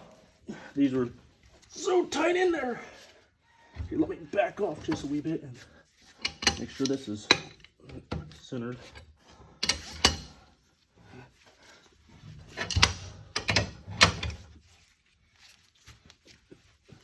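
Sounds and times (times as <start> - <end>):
tools clanking on metal: 6.1 - 10.4, 12.4 - 14.5.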